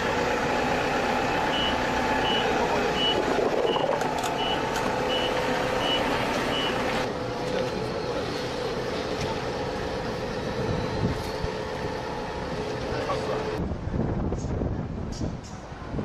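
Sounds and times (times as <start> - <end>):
heavy machine noise: 0.0 - 13.6
vehicle backup alarm beeping: 1.5 - 6.9.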